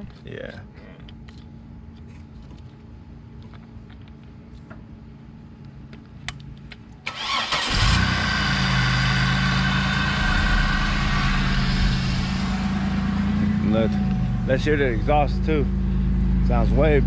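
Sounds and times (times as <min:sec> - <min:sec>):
car engine cranking: 0:07.1 - 0:14.6
car engine idling: 0:07.2 - 0:17.0.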